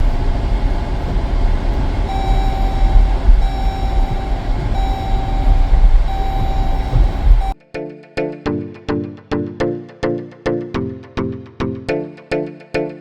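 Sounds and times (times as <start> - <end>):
loud low rumble: 0.0 - 7.6
electronic warning beep: 2.1 - 7.6.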